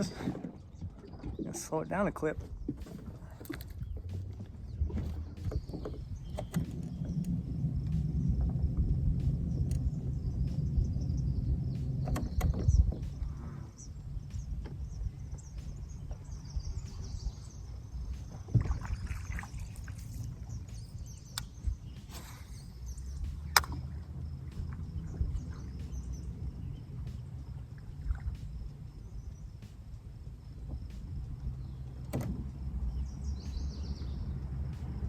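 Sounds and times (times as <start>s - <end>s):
boat motor rumbling: 0.0s - 35.0s.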